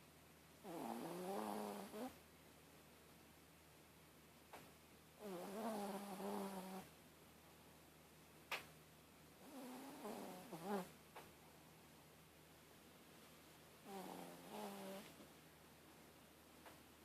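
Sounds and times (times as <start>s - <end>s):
pet snoring: 0.6s - 2.2s, 5.2s - 6.9s, 9.4s - 10.9s, 13.8s - 15.2s.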